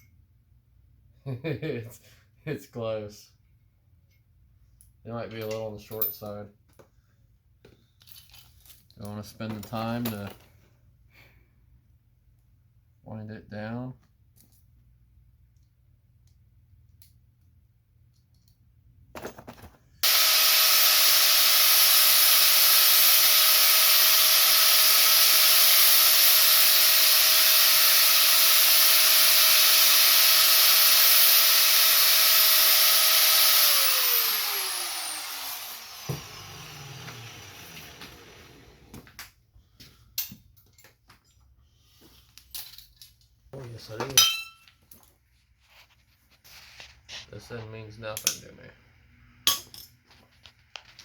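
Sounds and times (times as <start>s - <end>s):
power tool whining: 20.0s - 39.1s.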